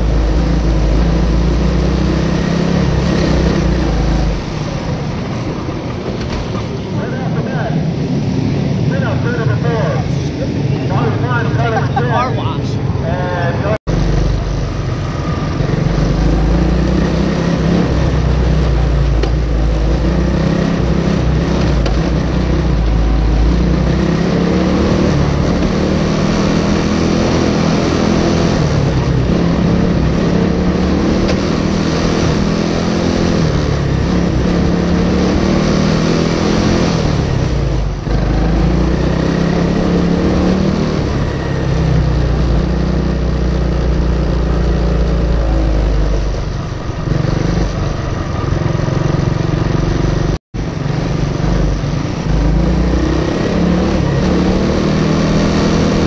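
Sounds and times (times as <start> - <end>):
kart engine revving: 0.0 - 6.8, 13.9 - 56.0.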